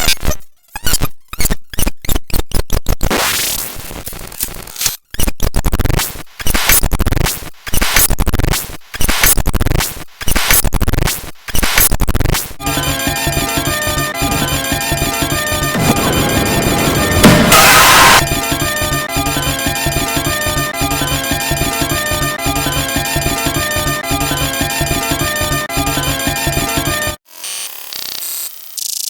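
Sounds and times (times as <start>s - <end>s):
electronic sharp hits: 12.6s - 27.1s
looping electronic tune: 12.6s - 27.2s
rising electronic swoops: 15.4s - 19.7s
burst of noise: 15.7s - 19.2s.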